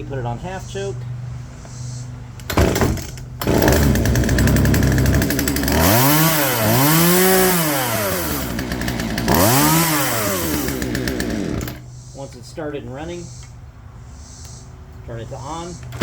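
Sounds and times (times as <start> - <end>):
chainsaw pull-started and revving: 2.4 - 11.8.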